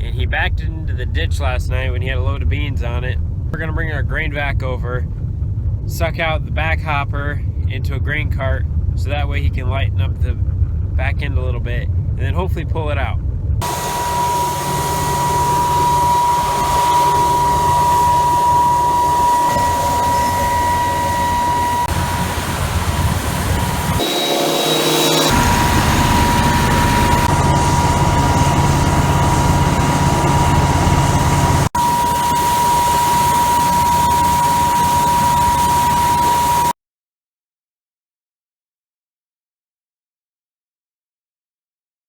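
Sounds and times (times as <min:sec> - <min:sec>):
engine rumble: 0:00.0 - 0:36.7
blower whine: 0:13.6 - 0:36.7.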